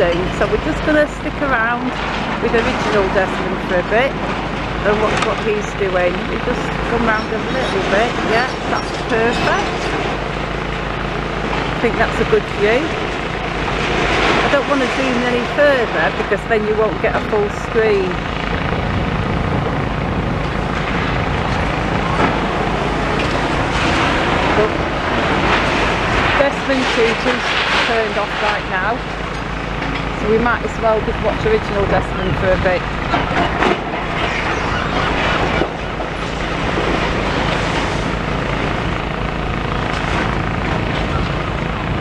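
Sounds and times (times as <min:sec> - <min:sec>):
excavator diesel engine rumble: 0:00.0 - 0:42.0
road traffic: 0:00.0 - 0:42.0.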